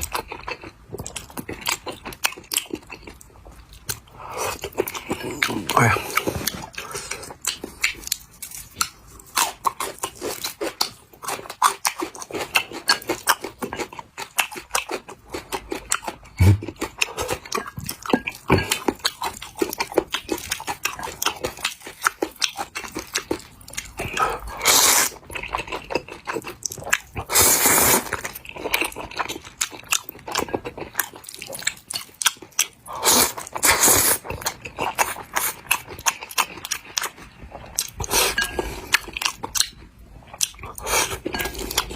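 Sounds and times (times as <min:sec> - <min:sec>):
wet chewing and smacking: 0:00.0 - 0:41.9
slurping noodles: 0:27.2 - 0:28.1.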